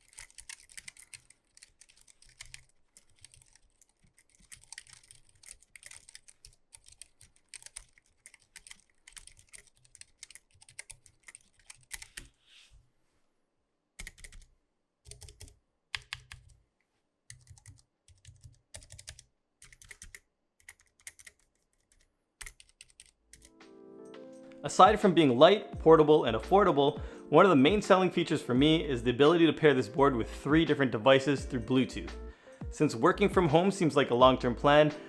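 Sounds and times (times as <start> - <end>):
mechanical keyboard typing: 0.0 - 12.3, 14.0 - 14.5, 15.1 - 16.6, 17.3 - 23.6.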